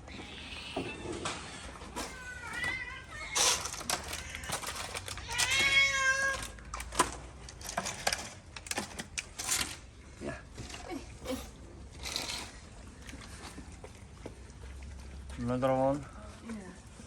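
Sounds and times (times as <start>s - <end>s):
cat meowing: 0.0s - 6.6s.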